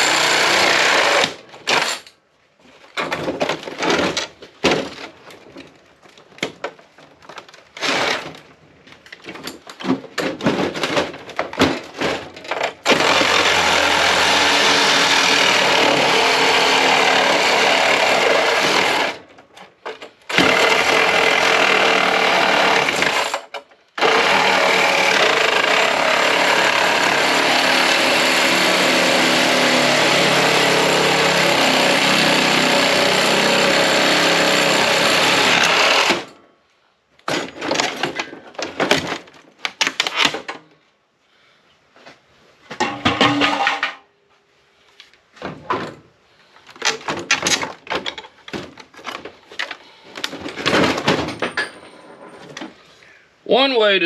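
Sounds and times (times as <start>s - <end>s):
power tool running: 0.0s - 1.4s, 12.9s - 19.2s, 24.0s - 36.3s.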